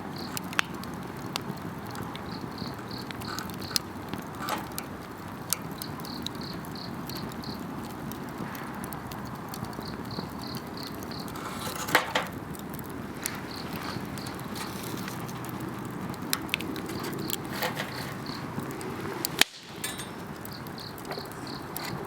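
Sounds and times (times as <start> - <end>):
campfire crackling: 0.0 - 22.0
fire popping: 0.0 - 22.0
insect chirping: 2.2 - 3.8, 5.8 - 7.6, 9.8 - 11.4, 13.2 - 14.6, 16.9 - 18.6, 19.6 - 22.0.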